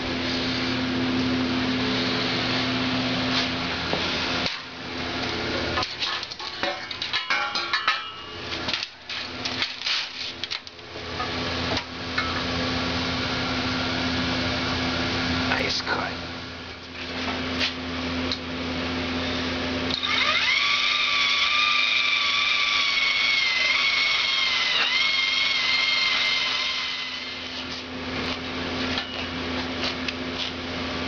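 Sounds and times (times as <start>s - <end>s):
steady mechanical hum: 0.0s - 31.0s
metal pieces clanking: 5.8s - 10.6s.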